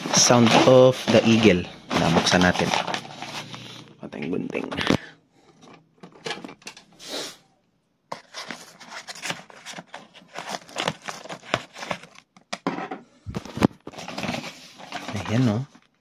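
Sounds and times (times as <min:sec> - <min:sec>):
wrapping crinkling and tearing: 0:00.0 - 0:03.8, 0:08.2 - 0:12.3.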